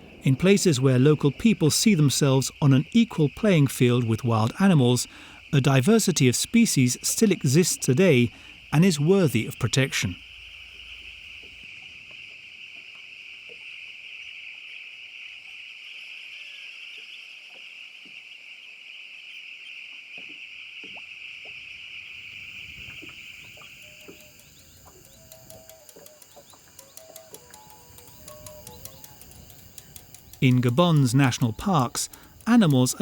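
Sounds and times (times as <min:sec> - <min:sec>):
insect chorus buzzing: 0:00.0 - 0:33.0
faint scattered clicks: 0:22.6 - 0:33.0.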